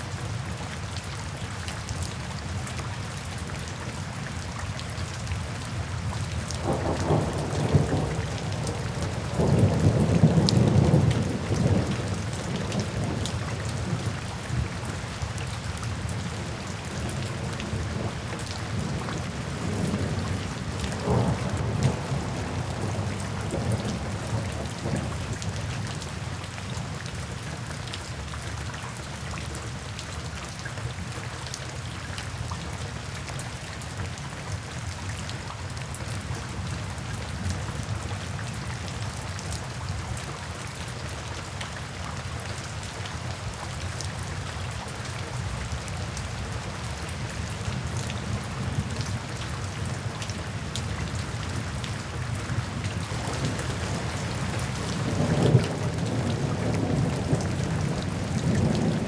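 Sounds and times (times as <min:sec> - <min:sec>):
steady rain: 0:00.0 - 0:59.0
thunder rumbling: 0:06.6 - 0:14.7, 0:16.4 - 0:25.2, 0:52.5 - 0:59.0.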